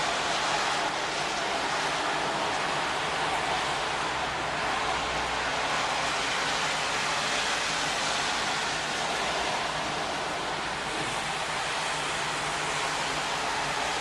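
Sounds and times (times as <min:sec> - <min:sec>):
heavy rain hissing: 0:00.0 - 0:14.0.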